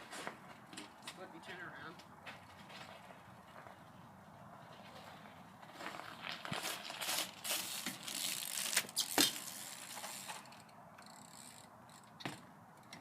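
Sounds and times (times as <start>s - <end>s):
person talking: 1.1s - 2.0s
bike ticking and rattling: 2.1s - 13.0s.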